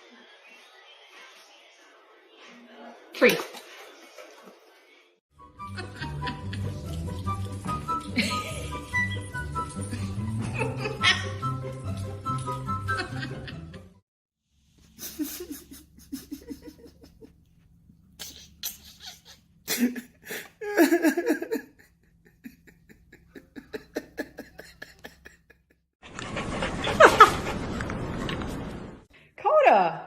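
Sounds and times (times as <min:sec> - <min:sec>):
person laughing: 0:05.8 - 0:06.8, 0:08.1 - 0:08.9, 0:09.8 - 0:11.4, 0:12.9 - 0:14.0, 0:15.0 - 0:17.4, 0:18.2 - 0:25.8.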